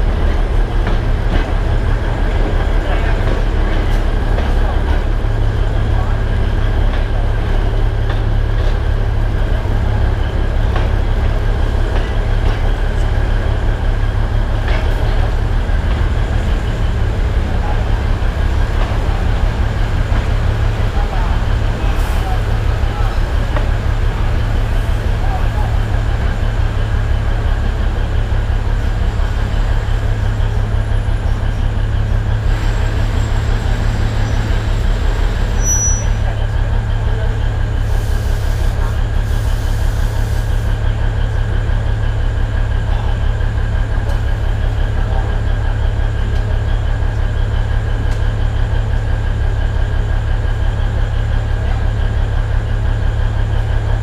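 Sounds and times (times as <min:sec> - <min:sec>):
diesel locomotive rumbling: 0:00.0 - 0:54.0
train running gear on track: 0:00.0 - 0:54.0.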